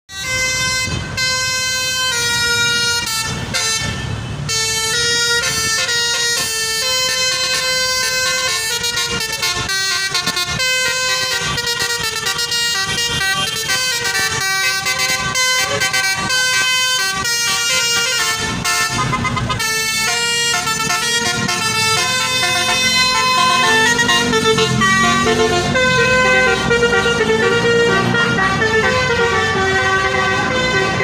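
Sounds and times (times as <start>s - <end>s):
bus horn playing a melody: 0.1s - 31.0s.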